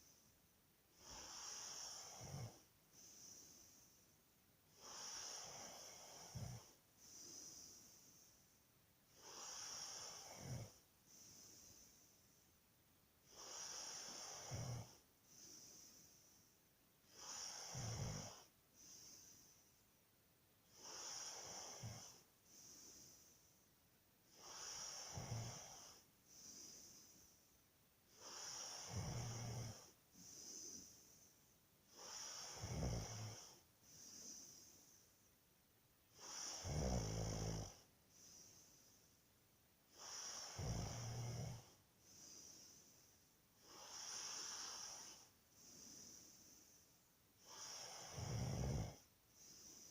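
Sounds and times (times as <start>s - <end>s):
person snoring: 1.0s - 3.9s, 4.8s - 8.3s, 9.2s - 12.1s, 13.3s - 16.4s, 17.1s - 19.6s, 20.7s - 23.4s, 24.3s - 27.4s, 28.1s - 31.2s, 31.9s - 35.0s, 36.1s - 39.0s, 39.9s - 46.8s, 47.4s - 49.9s.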